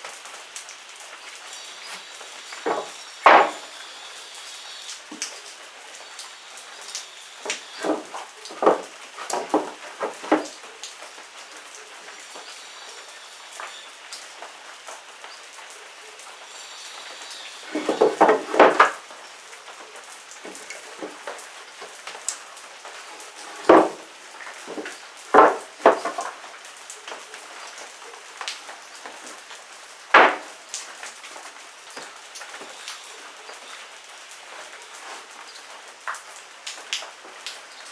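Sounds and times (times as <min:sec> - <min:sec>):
faint steady hiss: 0:00.0 - 0:37.9
wooden knocks and clatters: 0:02.6 - 0:03.7, 0:07.4 - 0:10.6, 0:17.7 - 0:19.0, 0:23.5 - 0:24.0, 0:24.6 - 0:26.4, 0:30.1 - 0:30.5.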